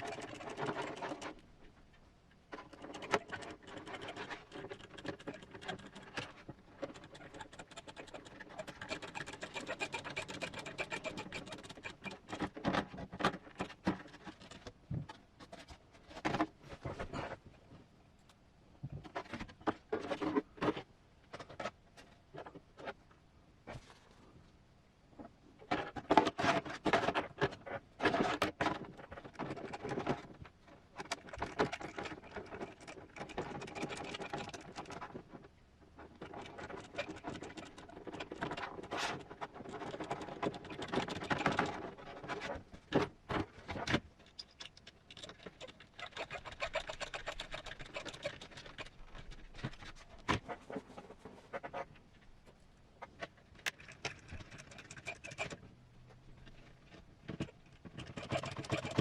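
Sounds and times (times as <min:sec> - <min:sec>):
plastic parts clicking and scraping: 0:00.0 - 0:17.5, 0:18.2 - 0:23.0, 0:25.2 - 0:59.0.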